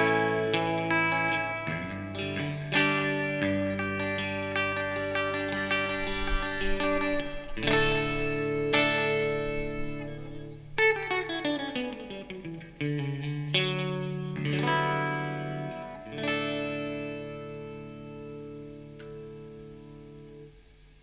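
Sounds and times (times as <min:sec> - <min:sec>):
falling guitar notes run: 0:00.0 - 0:19.6
electric guitar chords ringing: 0:00.0 - 0:20.6.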